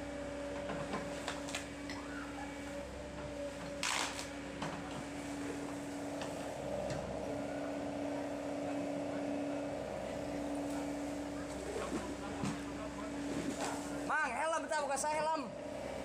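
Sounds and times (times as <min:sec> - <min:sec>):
excavator engine droning: 0:00.0 - 0:16.0.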